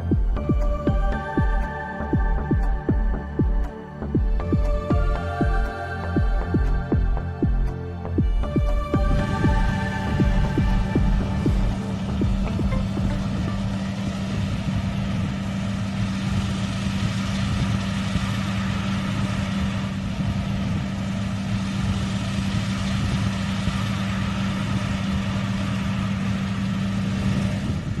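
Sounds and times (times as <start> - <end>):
combine harvester engine droning: 7.2 - 28.0.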